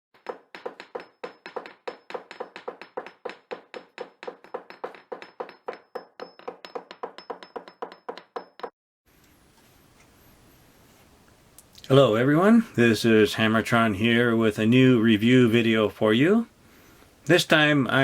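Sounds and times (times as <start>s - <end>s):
fast hollow knocks: 0.2s - 8.7s.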